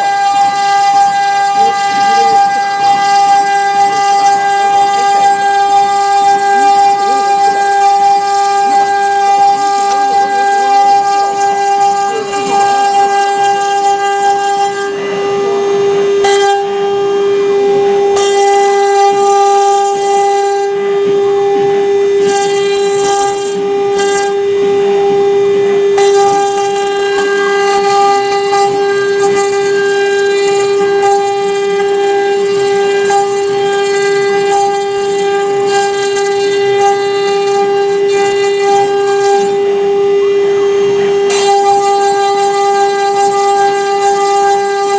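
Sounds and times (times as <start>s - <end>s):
spindle whine: 0.0s - 18.2s
router bit cutting wood: 0.0s - 44.9s.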